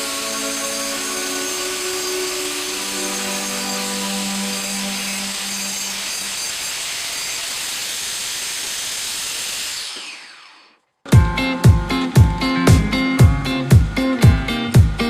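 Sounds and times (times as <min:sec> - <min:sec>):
low hum: 0:12.0 - 0:14.2.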